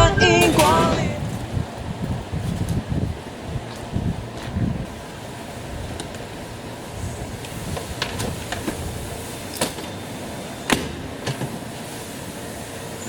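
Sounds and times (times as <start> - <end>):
steady background hiss: 0.0 - 1.6.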